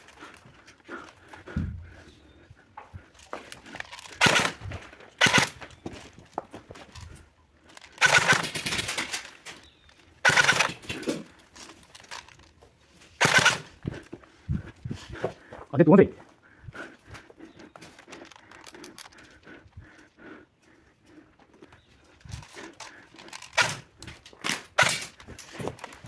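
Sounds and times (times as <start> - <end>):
airsoft gun firing bursts: 4.0 - 5.7, 8.0 - 9.5, 10.2 - 11.3, 13.2 - 13.7, 23.3 - 25.9.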